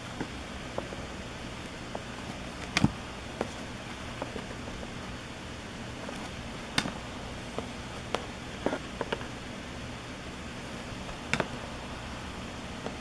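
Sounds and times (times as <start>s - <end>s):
steady hiss: 0.0s - 13.0s
cards clicking and tapping: 0.1s - 4.9s, 6.0s - 9.4s, 11.0s - 11.6s.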